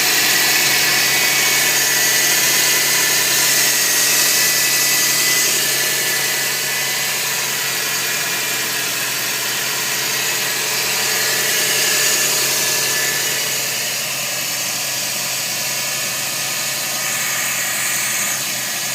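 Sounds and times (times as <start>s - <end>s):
car engine running: 0.0s - 18.9s
strange engine noise: 0.0s - 18.9s.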